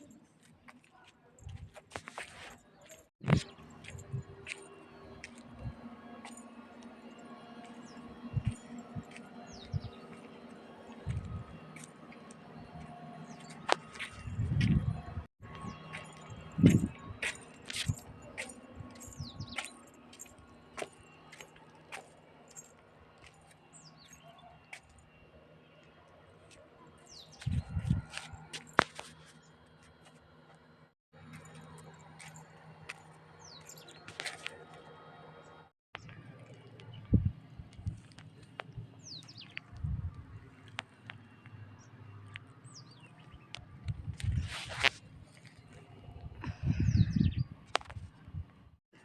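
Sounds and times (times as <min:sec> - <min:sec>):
small birds chirping: 0:07.6 - 0:15.0, 0:21.2 - 0:25.2, 0:36.0 - 0:43.7
short crunch: 0:43.5 - 0:45.9.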